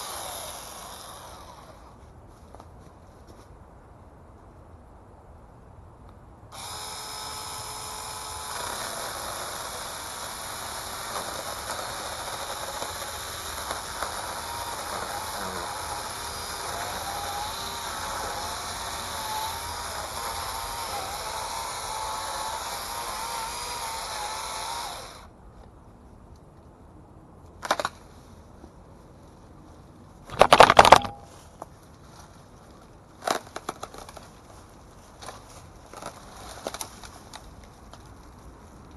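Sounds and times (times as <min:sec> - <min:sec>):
chainsaw cutting branch: 0:00.0 - 0:02.0, 0:06.5 - 0:25.3
electric chainsaw whine: 0:00.0 - 0:02.0, 0:06.5 - 0:25.3.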